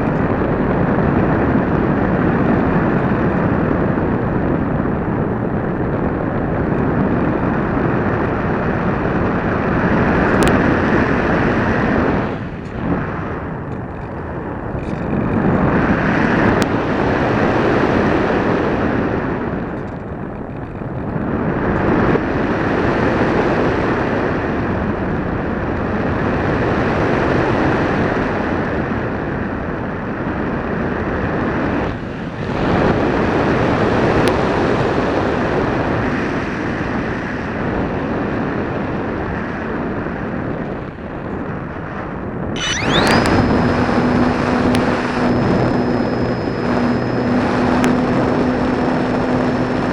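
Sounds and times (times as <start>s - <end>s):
airflow rushing over camera: 42.6s - 49.9s.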